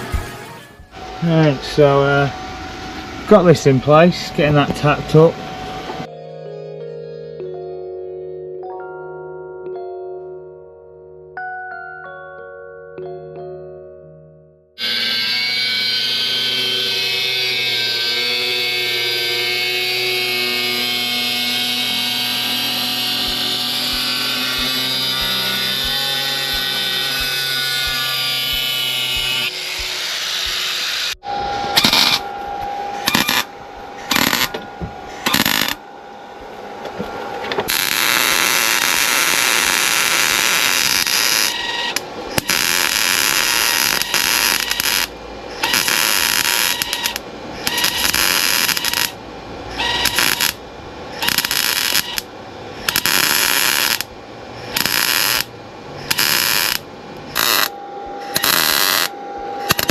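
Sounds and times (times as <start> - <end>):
welder crackling and hissing: 14.8 - 31.2, 31.8 - 32.3, 33.0 - 34.6, 35.2 - 35.8, 37.7 - 50.6, 51.2 - 59.9
power tool whine: 14.8 - 59.9.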